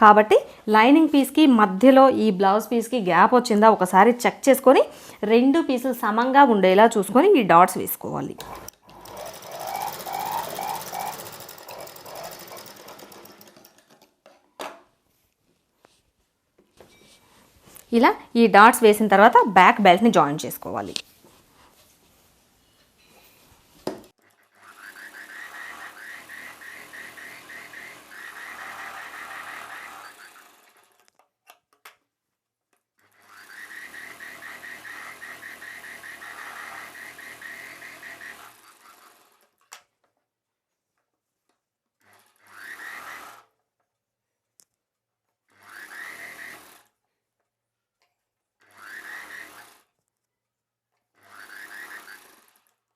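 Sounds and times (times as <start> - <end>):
sewing machine stitching: 8.4 - 14.2, 24.2 - 31.1, 33.0 - 39.6, 42.0 - 43.6, 45.5 - 47.0, 48.6 - 50.0, 51.1 - 52.9.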